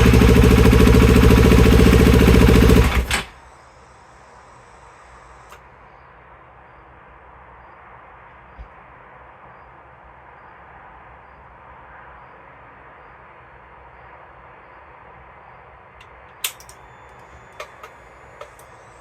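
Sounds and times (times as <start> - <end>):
sharp clicks: 16.4 - 18.7.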